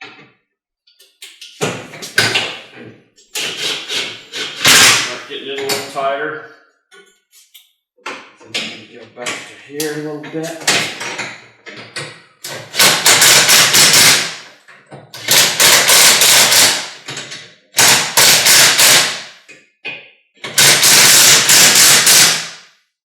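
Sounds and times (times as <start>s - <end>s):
impact driver hammering: 3.4s - 5.9s, 10.6s - 11.3s, 12.0s - 14.5s, 15.2s - 19.4s, 20.4s - 22.6s.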